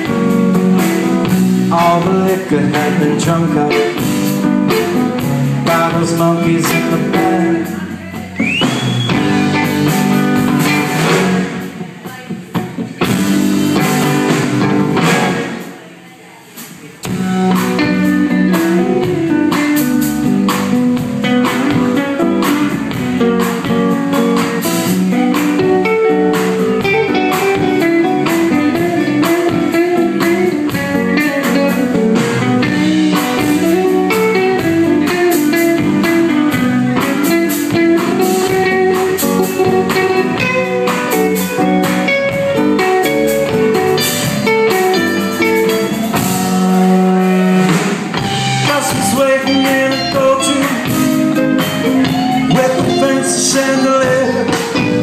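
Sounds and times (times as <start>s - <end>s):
live band playing blues: 0.0s - 55.0s
electric guitar solo: 17.2s - 55.0s.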